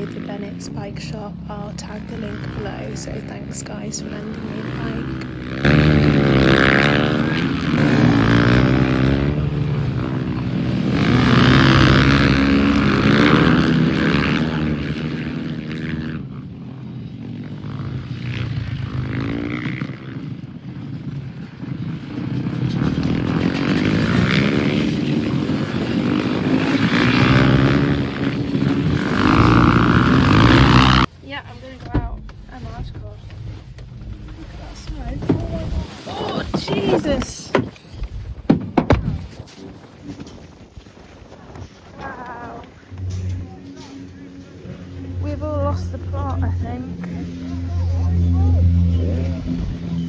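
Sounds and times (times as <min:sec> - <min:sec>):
motorcycle engine revving: 0:00.0 - 0:38.2, 0:39.6 - 0:50.0.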